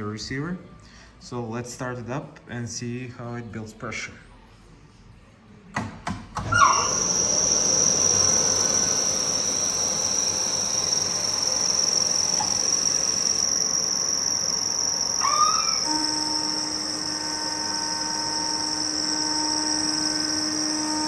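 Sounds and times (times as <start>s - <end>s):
air compressor whining: 6.4s - 21.0s.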